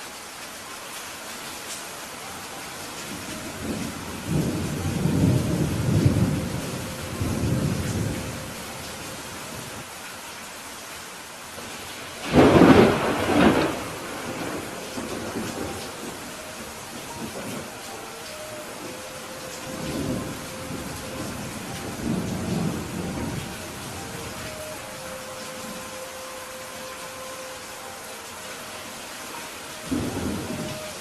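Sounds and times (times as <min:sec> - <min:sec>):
steady rain falling: 0:00.0 - 0:31.0
thunder rumbling: 0:03.2 - 0:09.8, 0:11.6 - 0:26.0, 0:29.8 - 0:31.0.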